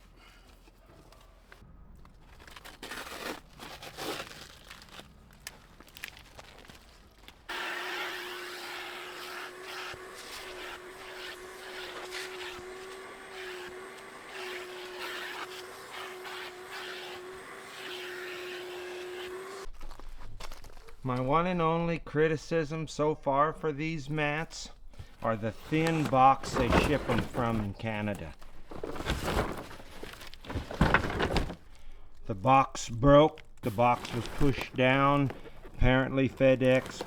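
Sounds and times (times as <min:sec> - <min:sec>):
vacuum cleaner running: 0:07.5 - 0:19.7
rustling and knocking of handling: 0:24.8 - 0:31.8.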